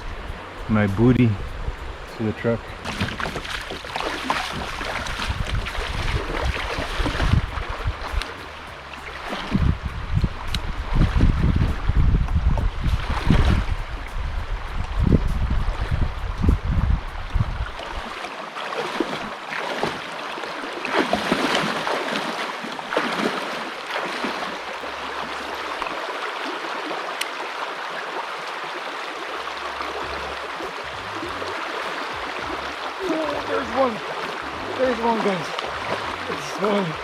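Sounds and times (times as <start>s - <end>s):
low rumbling: 0.0s - 3.2s, 3.8s - 17.8s
river running over rocks: 17.7s - 37.0s.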